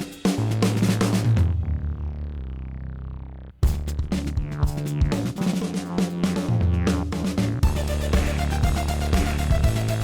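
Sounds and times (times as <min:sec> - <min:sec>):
electronic music with bass and beat: 0:03.6 - 0:10.0.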